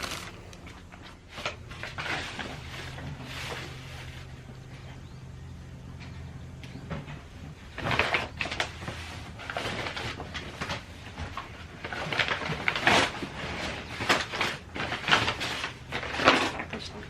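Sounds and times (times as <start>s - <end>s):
rustling of belongings: 0.0s - 4.9s, 7.1s - 17.0s
faint low hum: 0.0s - 17.0s.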